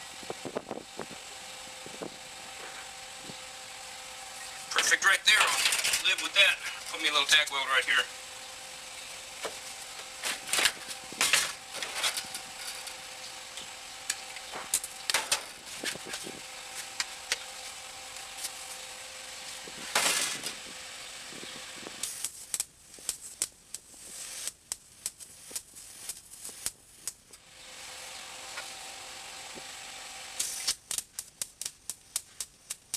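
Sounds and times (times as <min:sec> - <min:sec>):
steady hum: 0:00.0 - 0:32.8
welding arc crackle and sizzle: 0:00.0 - 0:32.9
sharp pops: 0:21.9 - 0:27.4, 0:30.4 - 0:32.9.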